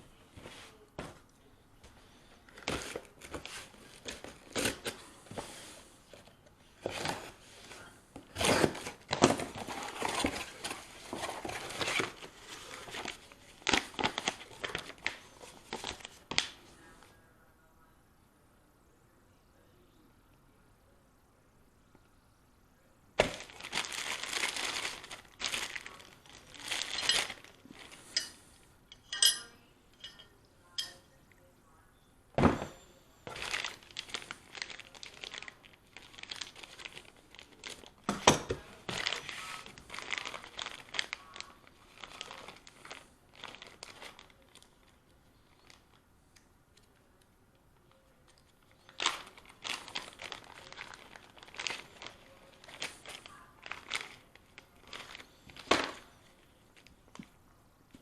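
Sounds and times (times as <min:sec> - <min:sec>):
crinkling and rustling handling: 0:00.0 - 0:17.4, 0:23.2 - 0:58.0.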